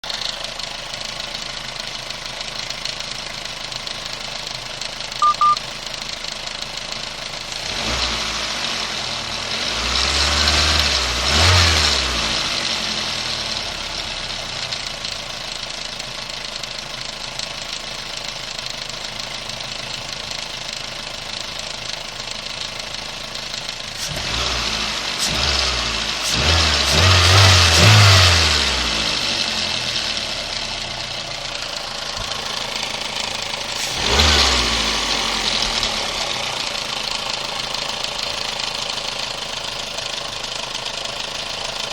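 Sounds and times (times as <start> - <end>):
short double beep: 5.2 - 5.6
car engine revving with knock: 7.6 - 13.8, 23.9 - 38.9.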